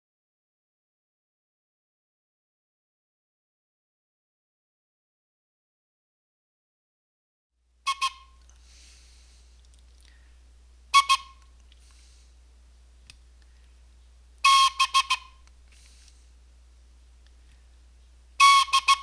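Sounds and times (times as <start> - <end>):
whistle toots: 7.9 - 8.4, 10.9 - 11.5, 14.4 - 15.5, 18.4 - 19.0.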